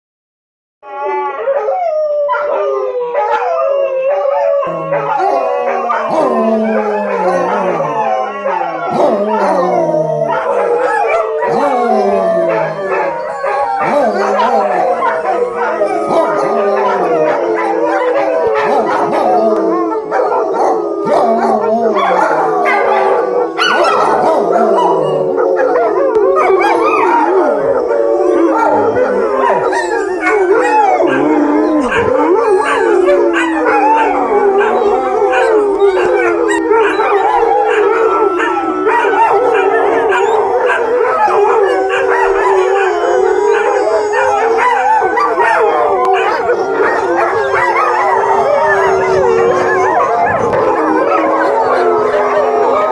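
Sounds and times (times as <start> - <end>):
dogs howling together: 0.8 - 52.9
dogs barking and yipping: 1.2 - 52.9.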